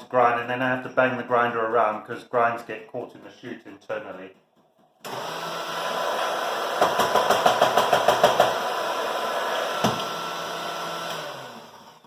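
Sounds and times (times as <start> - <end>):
coffee grinder motor running: 5.0 - 12.0
knocks on coffee grinder: 6.8 - 8.6, 9.8 - 10.2.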